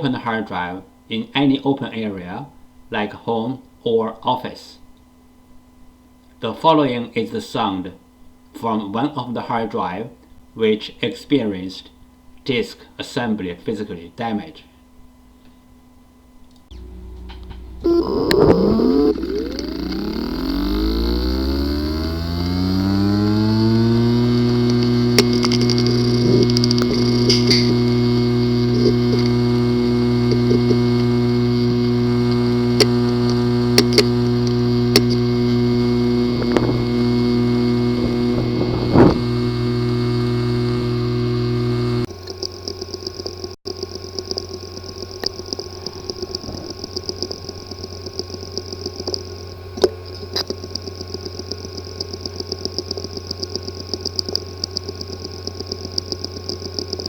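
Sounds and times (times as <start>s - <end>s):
damaged hard drive humming and ticking: 14.8s - 57.0s.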